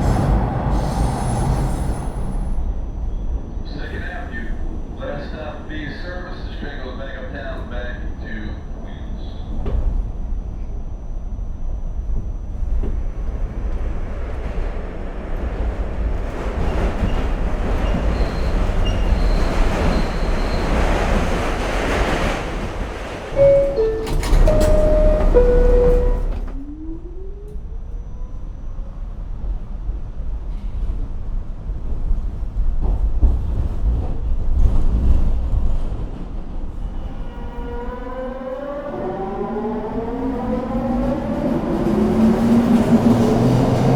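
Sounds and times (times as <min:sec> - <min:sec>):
subway train rumble: 0:00.0 - 0:43.9
chime tone: 0:23.4 - 0:26.4.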